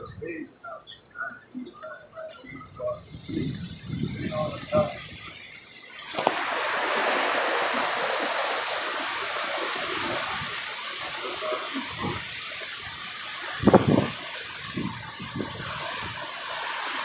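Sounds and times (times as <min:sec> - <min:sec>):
hurricane wind and rain rushing: 0:01.6 - 0:17.0.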